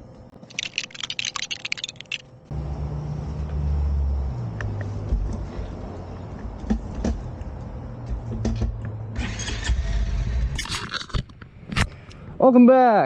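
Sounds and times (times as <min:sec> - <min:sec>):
vehicle engine humming: 0:00.0 - 0:10.6
scattered clicks: 0:00.5 - 0:02.3.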